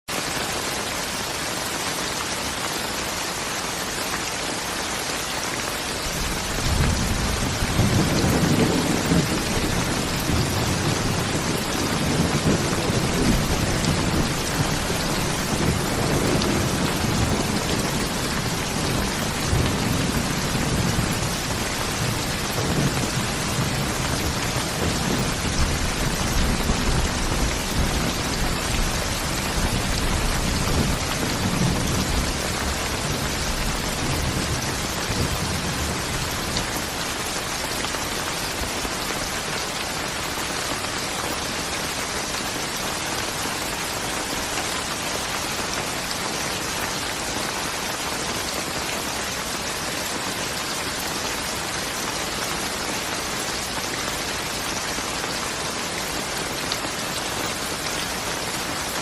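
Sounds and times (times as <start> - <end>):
heavy rain hiss: 0.1 - 59.0
rolling thunder rumble: 6.2 - 37.3.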